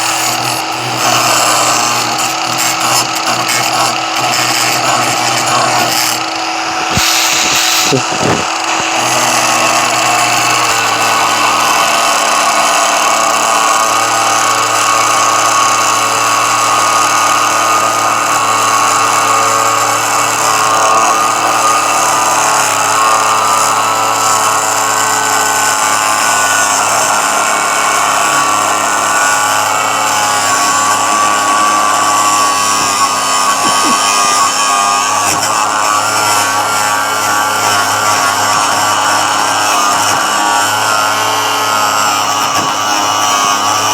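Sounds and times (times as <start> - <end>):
angle grinder cutting metal: 0.0 - 43.9.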